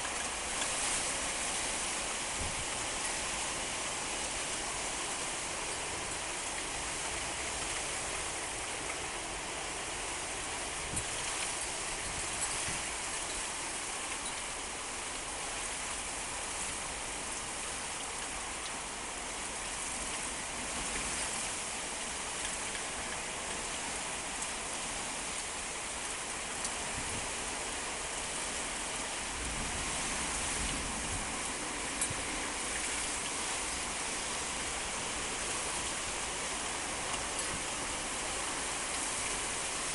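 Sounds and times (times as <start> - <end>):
heavy rain: 0.0 - 39.9
raindrops ticking close by: 0.0 - 39.9
wind storm: 26.8 - 27.4, 29.2 - 36.4.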